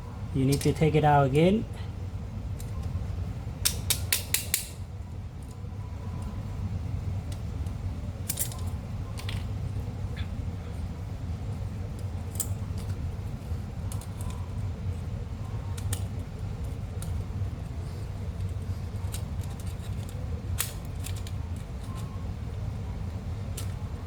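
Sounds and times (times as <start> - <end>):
steady low hum: 0.0 - 24.0
light metallic clicks and taps: 3.6 - 4.8.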